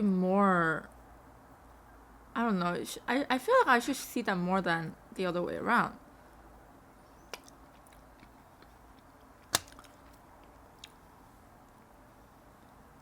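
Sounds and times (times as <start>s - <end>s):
sharp crunches: 7.3s - 10.2s
person chewing food: 7.3s - 11.1s.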